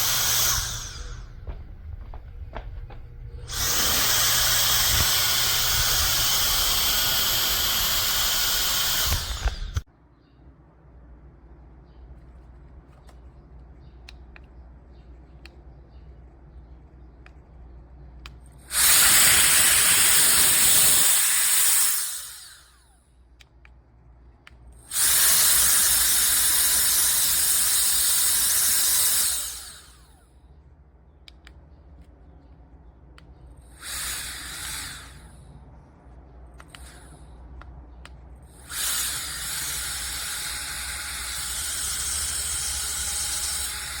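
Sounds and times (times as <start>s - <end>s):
electric air duster blowing: 0.0s - 2.2s, 3.4s - 9.9s, 18.7s - 22.8s, 24.9s - 30.1s, 33.8s - 35.3s, 38.6s - 44.0s.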